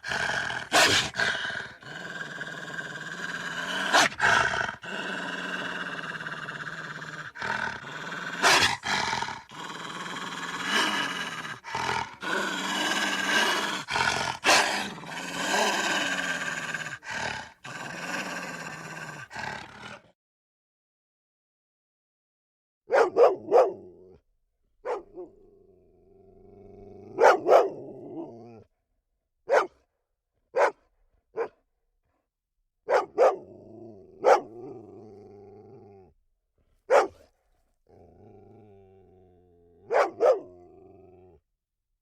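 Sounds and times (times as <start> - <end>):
cartoon dogs growling: 0.0 - 20.2, 37.9 - 41.4
short loud dog barks: 22.9 - 23.7, 29.5 - 29.7, 30.6 - 30.8, 36.9 - 37.3.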